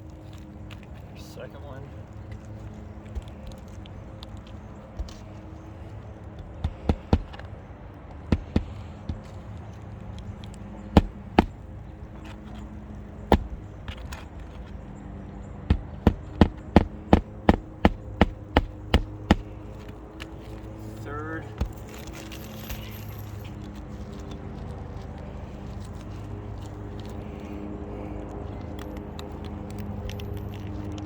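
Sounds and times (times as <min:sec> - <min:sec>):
hammer driving nail through shingle: 0:06.4 - 0:07.5, 0:08.2 - 0:09.4, 0:10.9 - 0:12.4, 0:13.2 - 0:14.7, 0:15.6 - 0:19.9.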